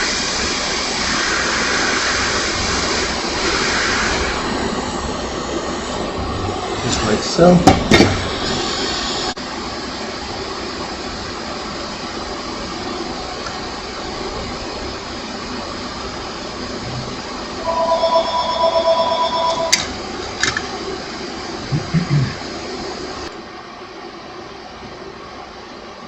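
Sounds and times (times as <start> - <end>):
electronic two-tone note: 17.6 - 19.9.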